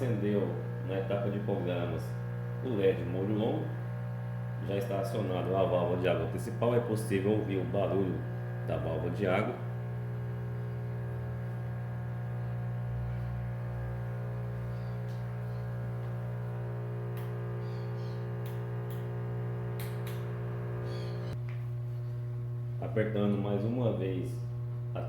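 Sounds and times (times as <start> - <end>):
solenoid valve buzzing: 0.0 - 25.0.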